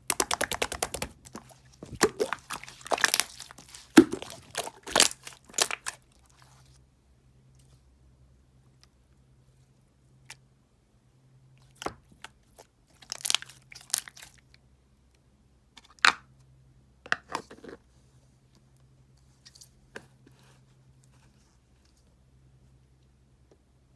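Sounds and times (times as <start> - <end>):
crackling and crunching handling: 0.0 - 6.8, 11.6 - 14.5.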